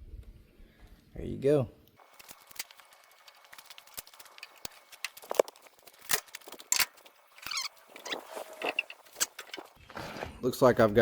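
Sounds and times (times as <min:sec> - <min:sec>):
hand tools clicking and knocking: 0:04.2 - 0:09.8.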